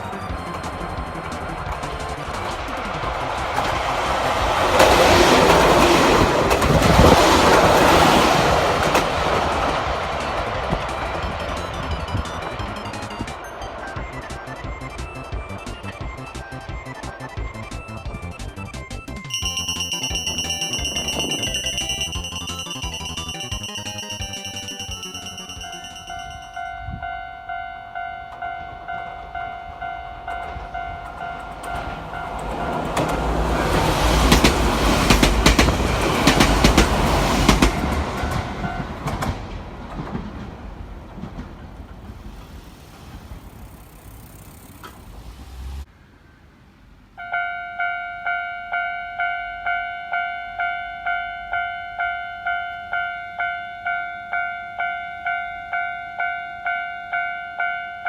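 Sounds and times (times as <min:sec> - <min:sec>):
train rumble and wheel clatter: 0:00.0 - 0:45.9
level crossing bell ringing: 0:19.3 - 0:31.6, 0:47.2 - 0:58.0.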